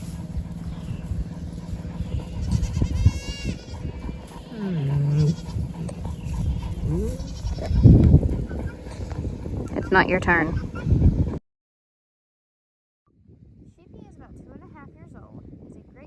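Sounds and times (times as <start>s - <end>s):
steady low rumble: 0.0s - 11.4s
goats bleating: 2.2s - 8.1s.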